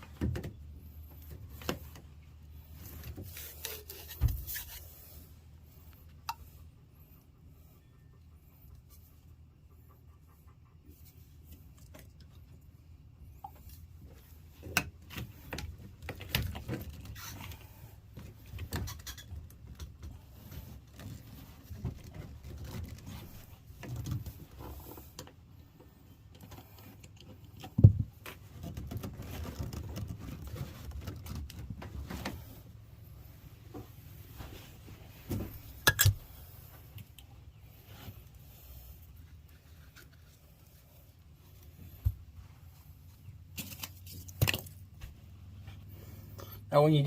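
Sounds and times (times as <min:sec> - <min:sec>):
pipe fittings clicking and rattling: 0:13.3 - 0:32.6, 0:35.3 - 0:37.4.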